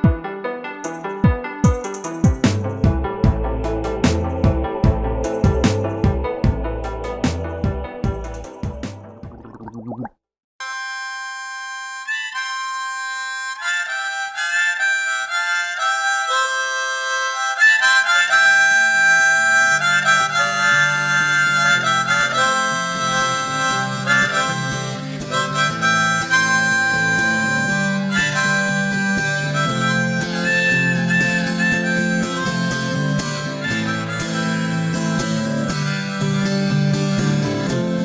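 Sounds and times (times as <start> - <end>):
harmonica holding notes: 10.6 - 38.0.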